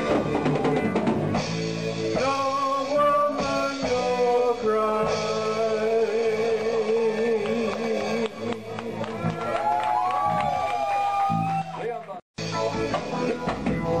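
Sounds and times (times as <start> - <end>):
live reggae band playing: 0.0 - 11.8, 12.4 - 14.0.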